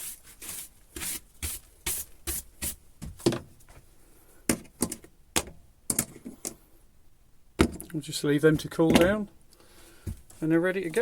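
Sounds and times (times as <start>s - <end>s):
brush sweeping paint flakes: 0.0s - 2.8s.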